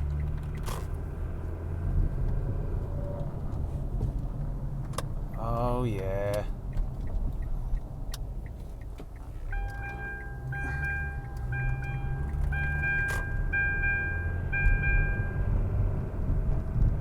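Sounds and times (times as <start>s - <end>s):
road and engine rumble: 0.0s - 17.0s
electronic warning chime: 9.5s - 15.5s.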